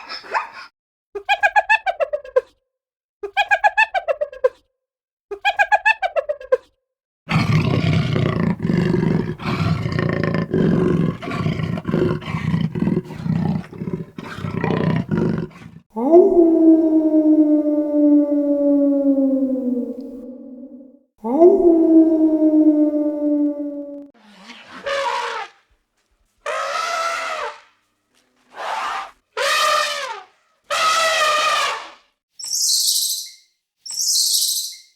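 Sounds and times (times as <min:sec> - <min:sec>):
animal calls: 0:07.3 - 0:15.8, 0:22.8 - 0:25.6, 0:26.4 - 0:27.8, 0:28.4 - 0:34.9.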